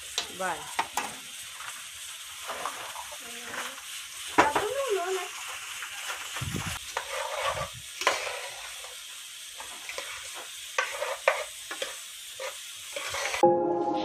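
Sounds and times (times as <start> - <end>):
food sizzling in oil: 0.0 - 13.4
utensil scraping pan: 2.4 - 3.8, 5.8 - 9.0, 9.6 - 13.4.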